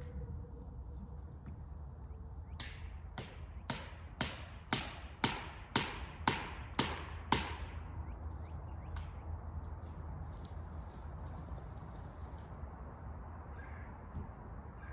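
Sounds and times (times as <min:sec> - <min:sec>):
sledgehammer striking a wedge: 0:02.6 - 0:07.8.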